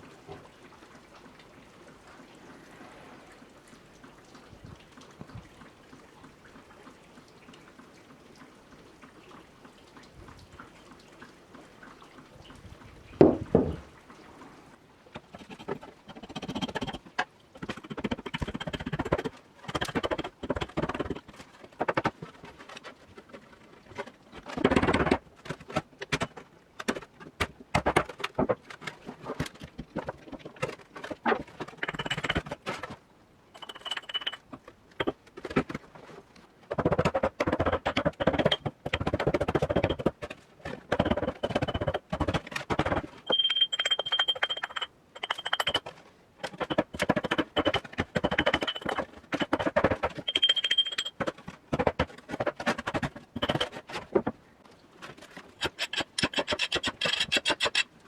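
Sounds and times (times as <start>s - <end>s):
metal tool scraping and clicking: 33.6s - 34.4s, 43.2s - 51.3s, 55.6s - 57.9s.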